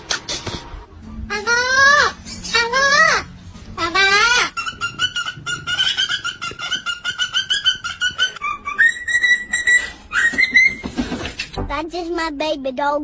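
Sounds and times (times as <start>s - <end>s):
parrot chirping and whistling: 4.2s - 10.9s.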